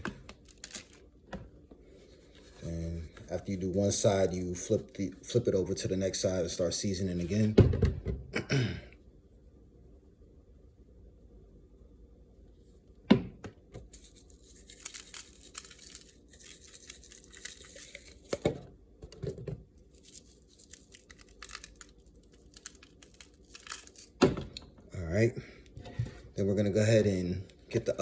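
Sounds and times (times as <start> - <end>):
crinkly rustling and shaking: 0.3 - 1.0, 13.8 - 18.4, 19.8 - 24.2.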